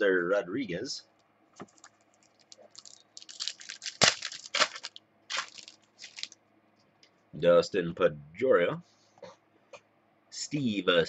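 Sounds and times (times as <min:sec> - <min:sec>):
trading card packaging rustling: 0:01.6 - 0:06.4.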